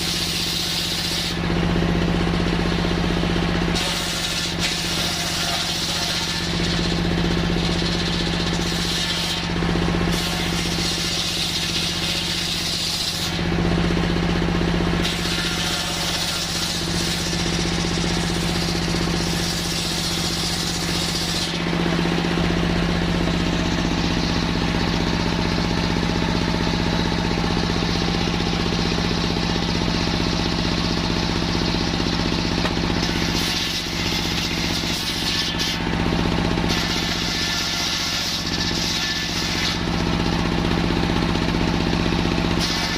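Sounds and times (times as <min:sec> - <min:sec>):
saw cutting hiss: 0:00.0 - 0:01.4, 0:03.8 - 0:07.0, 0:07.7 - 0:09.5, 0:10.1 - 0:13.4, 0:15.0 - 0:17.4, 0:36.7 - 0:39.8, 0:42.6 - 0:42.9
sawmill engine running: 0:00.0 - 0:42.9.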